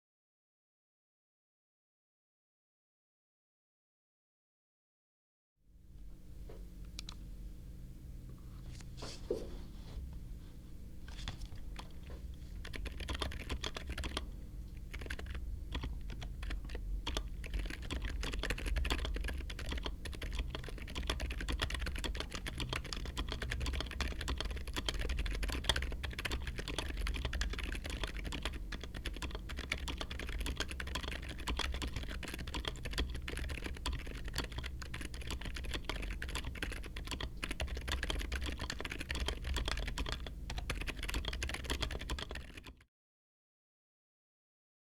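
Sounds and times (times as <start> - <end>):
typing on mechanical keyboard: 12.6 - 42.8.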